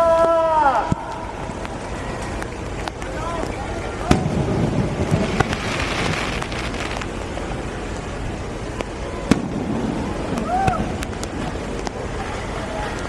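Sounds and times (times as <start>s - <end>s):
rain hiss: 0.0s - 13.0s
fireworks crackling: 0.9s - 13.0s
fireworks bangs: 3.4s - 7.4s, 8.8s - 12.0s.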